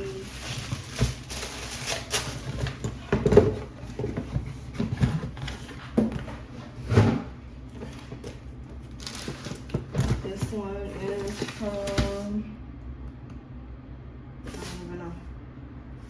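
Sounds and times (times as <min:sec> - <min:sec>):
packaging rustling: 0:00.0 - 0:12.2
boxes knocking: 0:00.2 - 0:12.2.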